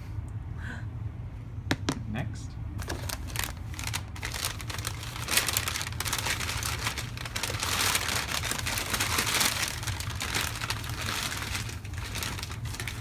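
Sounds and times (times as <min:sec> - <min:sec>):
newspaper wrapping crinkling and tearing: 0:02.8 - 0:13.0.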